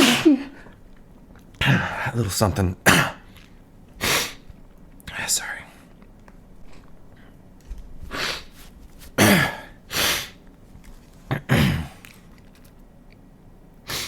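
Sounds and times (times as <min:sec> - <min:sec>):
man sneezing: 0:00.0 - 0:00.5, 0:09.2 - 0:10.4, 0:11.3 - 0:12.0.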